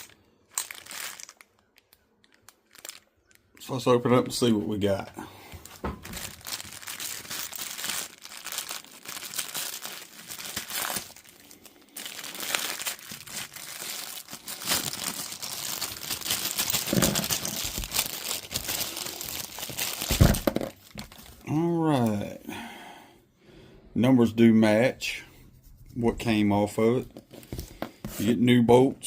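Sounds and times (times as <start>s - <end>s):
packaging torn and crinkled: 0.0s - 3.8s, 5.6s - 21.4s.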